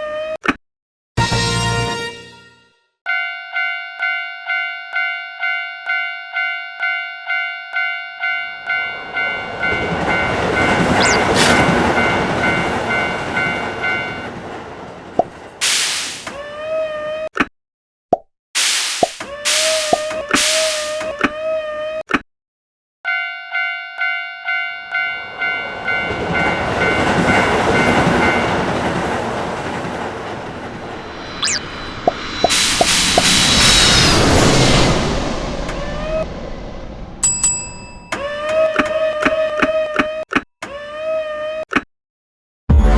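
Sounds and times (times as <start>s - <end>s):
level crossing warning bell: 3.1s - 14.6s, 23.1s - 30.1s, 37.2s - 39.2s
passing train rushing: 8.2s - 16.4s, 19.5s - 21.1s, 25.0s - 38.5s
high squeal: 10.9s - 11.8s, 30.9s - 37.2s.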